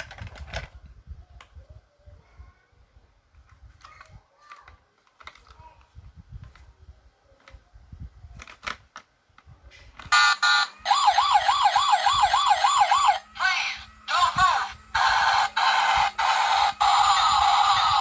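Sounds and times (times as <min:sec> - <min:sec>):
toy electronic siren warbling: 0:10.1 - 0:18.0.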